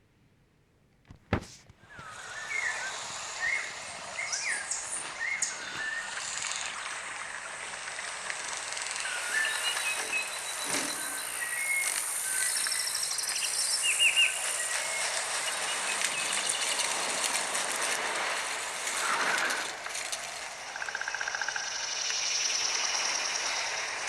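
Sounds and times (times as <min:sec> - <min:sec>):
steady hiss: 0:01.1 - 0:24.0.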